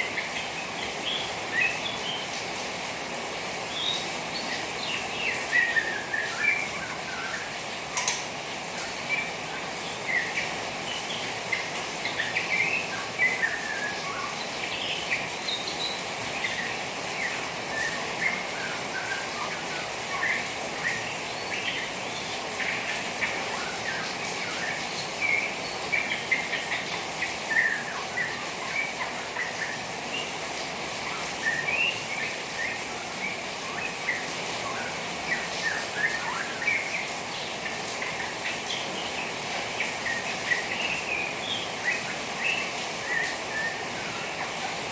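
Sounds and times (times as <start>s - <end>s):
rain water hissing: 0.0s - 44.9s.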